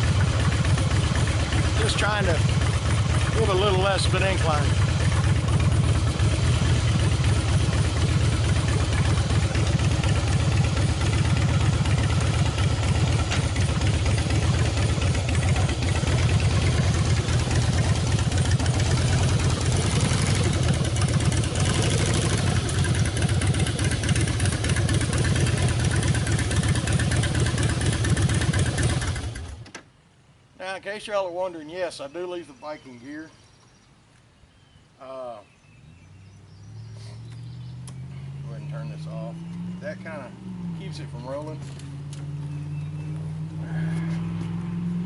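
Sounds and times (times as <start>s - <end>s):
motorcycle engine idling: 0.0s - 29.6s.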